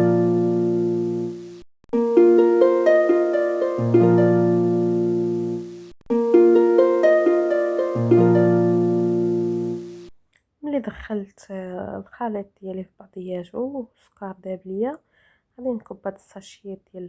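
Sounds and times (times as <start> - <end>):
plucked harp-like melody: 0.0 - 1.2, 2.0 - 10.1
held bass note: 0.0 - 1.4.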